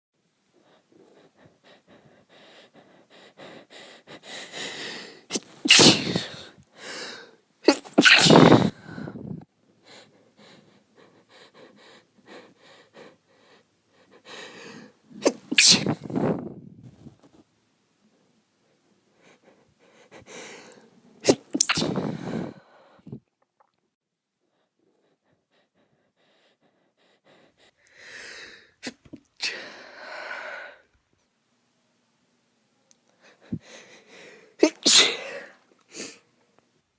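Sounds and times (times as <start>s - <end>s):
woman breathing quickly: 0.5s - 7.5s, 8.4s - 16.6s, 18.8s - 21.1s, 22.0s - 23.3s, 24.4s - 28.8s, 29.4s - 30.9s, 33.1s - 34.6s
shaky catching breaths: 0.6s - 7.3s, 19.2s - 23.3s
woman sneezing: 5.3s - 6.5s, 7.6s - 8.8s, 15.2s - 16.0s, 21.2s - 22.3s, 34.6s - 35.6s.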